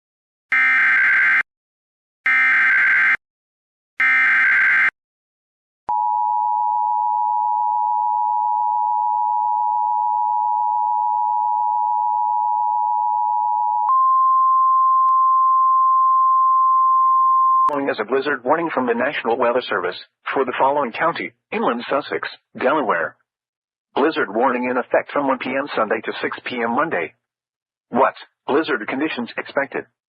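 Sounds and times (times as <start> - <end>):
steady warning alarm tone: 0.5 - 1.5, 2.3 - 3.2, 4.0 - 4.9.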